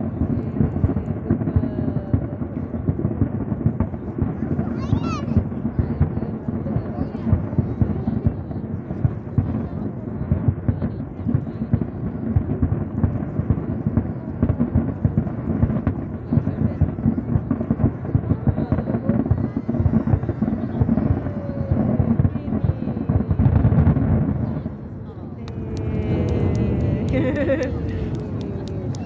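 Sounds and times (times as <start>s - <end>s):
fireworks booming: 25.4s - 29.0s.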